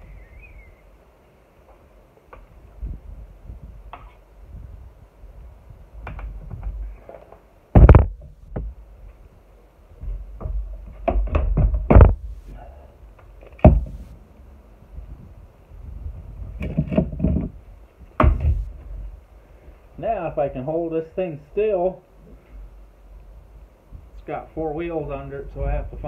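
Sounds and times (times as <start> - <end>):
loud sharp knocks: 7.8 - 8.7, 11.0 - 12.2, 13.6 - 14.0.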